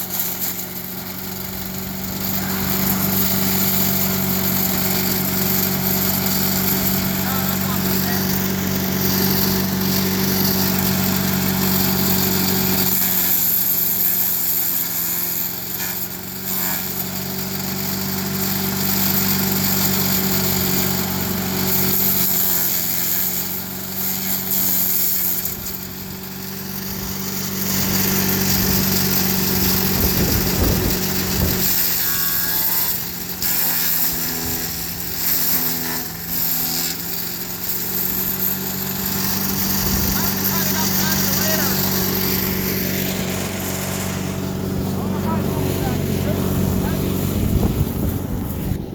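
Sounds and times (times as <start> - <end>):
machine crackle: 0.0 - 13.4, 26.0 - 48.0
small engine running: 0.0 - 48.9.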